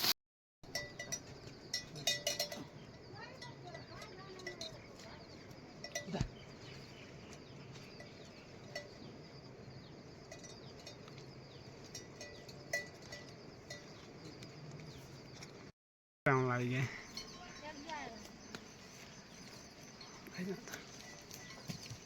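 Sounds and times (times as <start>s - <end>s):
livestock bells clinking: 0.7s - 6.7s, 7.9s - 9.2s, 10.2s - 14.4s, 16.8s - 18.3s, 19.8s - 22.0s.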